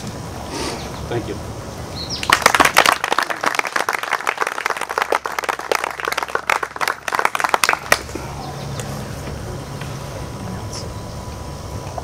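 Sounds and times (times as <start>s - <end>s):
people applauding: 2.2s - 8.8s.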